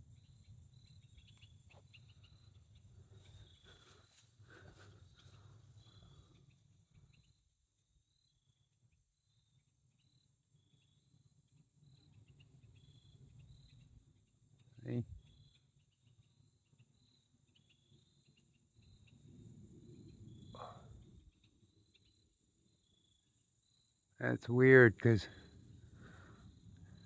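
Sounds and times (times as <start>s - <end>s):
crickets chirping: 0.0s - 27.0s.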